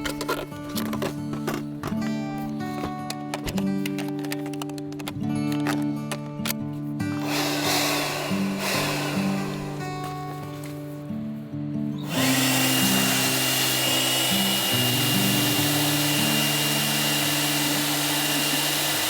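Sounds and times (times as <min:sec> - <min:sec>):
background music: 0:00.3 - 0:19.0
small electric motor whining: 0:07.2 - 0:10.2, 0:12.0 - 0:19.0.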